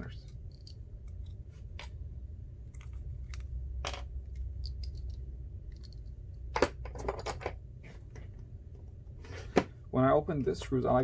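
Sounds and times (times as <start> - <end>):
low steady hum: 0.0 - 11.0
metal screws and screwdriver clinking: 0.3 - 1.3, 4.6 - 6.2.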